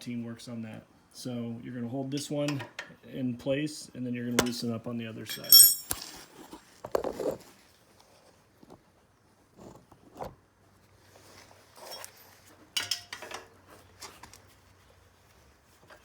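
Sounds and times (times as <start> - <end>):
wrenches clinking on metal nut: 5.3 - 6.2.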